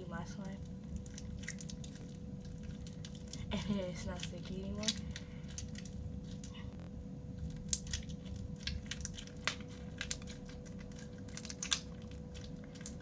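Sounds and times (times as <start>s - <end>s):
crunchy slime kneaded by hand: 0.4s - 13.0s.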